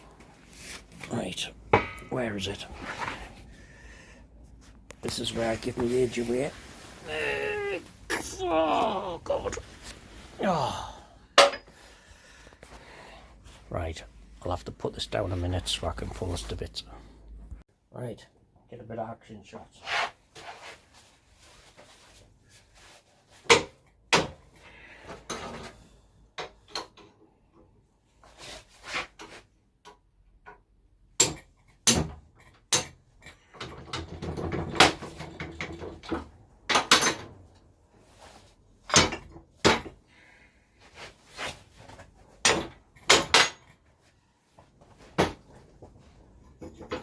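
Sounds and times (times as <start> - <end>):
metal clanks: 1.7 - 2.2, 11.4 - 11.8.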